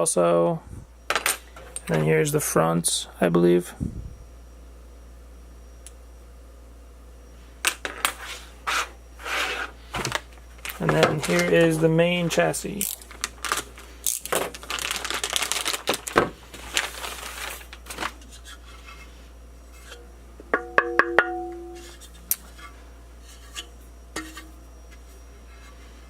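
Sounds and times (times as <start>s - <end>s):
packaging rustling: 10.0s - 11.8s, 12.8s - 18.5s
brief ringing tone: 20.6s - 22.0s.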